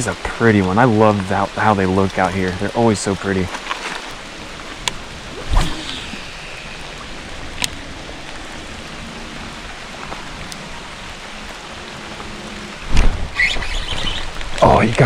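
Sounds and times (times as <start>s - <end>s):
water rushing hiss: 0.0s - 15.0s.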